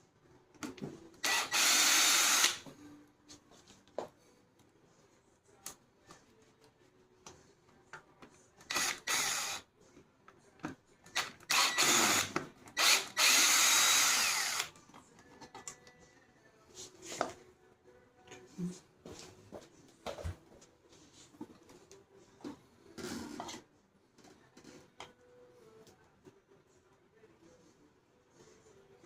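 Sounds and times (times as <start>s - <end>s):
power drill running: 1.2s - 2.6s, 8.7s - 9.6s, 11.2s - 14.7s.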